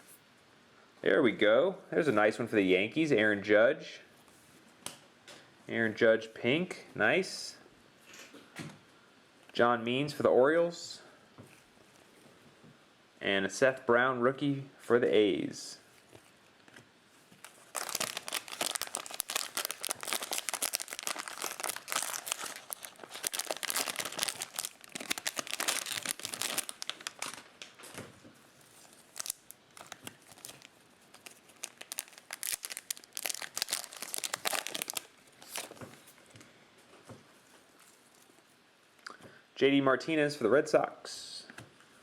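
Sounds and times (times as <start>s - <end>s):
cellophane wrapper crinkling: 17.3s - 27.8s, 28.4s - 36.3s.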